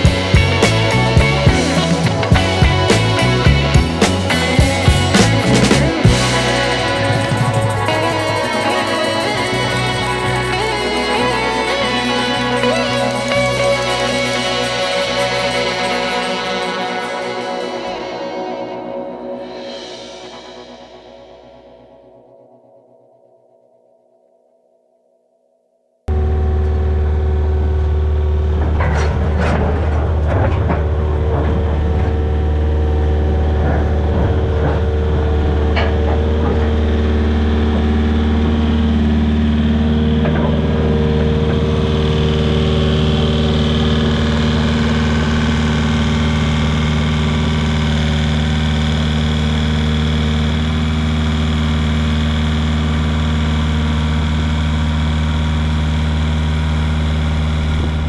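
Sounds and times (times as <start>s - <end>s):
diesel engine running under load: 26.6s - 58.0s.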